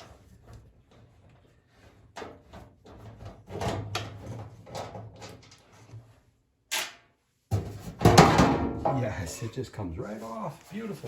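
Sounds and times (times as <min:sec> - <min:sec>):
dryer panel knocking and scraping: 0:07.5 - 0:09.2.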